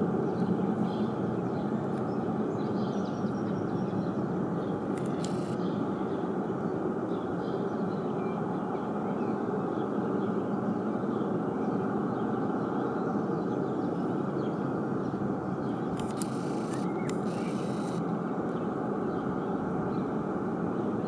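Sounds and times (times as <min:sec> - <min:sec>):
faint bird chirps: 0:05.0 - 0:05.8.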